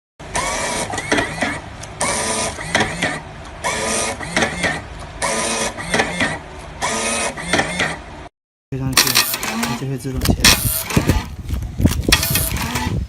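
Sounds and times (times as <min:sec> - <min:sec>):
tape dispenser motor whine: 0:00.2 - 0:08.0, 0:08.9 - 0:13.0
tape cutter clicks: 0:11.9 - 0:13.0.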